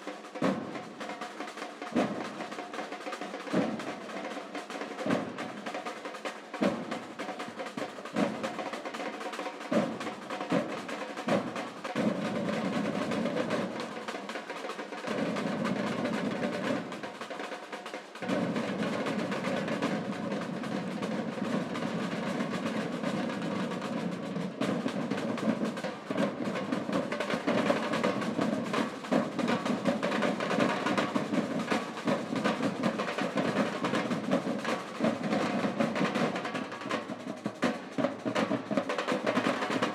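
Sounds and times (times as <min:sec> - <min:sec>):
samba percussion ensemble: 0:00.0 - 0:39.9.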